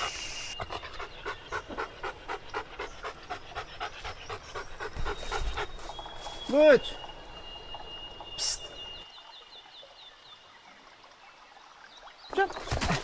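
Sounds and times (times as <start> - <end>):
dog panting: 0.0 - 6.2.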